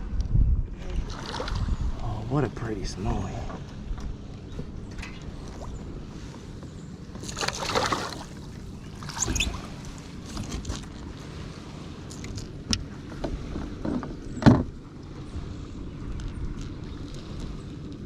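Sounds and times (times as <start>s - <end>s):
knocks and clicks against hull: 3.4s - 5.8s, 6.6s - 11.2s, 12.1s - 15.2s
water splashing: 7.2s - 12.4s.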